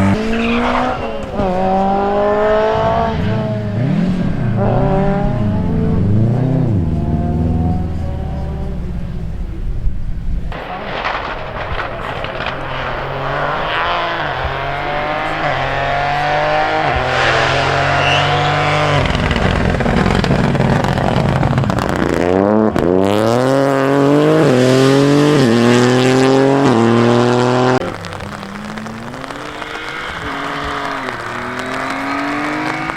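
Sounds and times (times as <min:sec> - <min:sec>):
rally car engine accelerating: 0:00.0 - 0:32.9.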